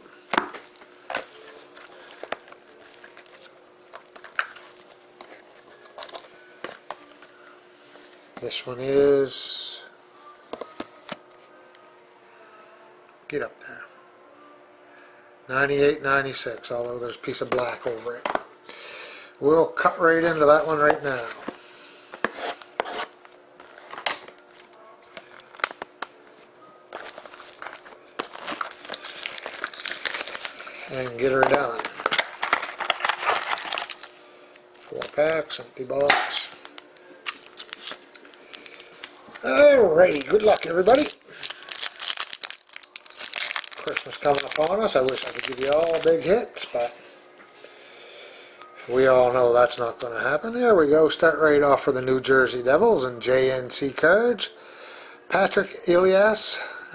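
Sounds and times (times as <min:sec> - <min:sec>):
faint steady hum: 0:00.0 - 0:56.9
plastic crinkling: 0:00.3 - 0:06.8, 0:26.9 - 0:46.4
shrink wrap snapping and clicking: 0:31.7 - 0:34.1, 0:34.8 - 0:38.8, 0:39.4 - 0:46.1.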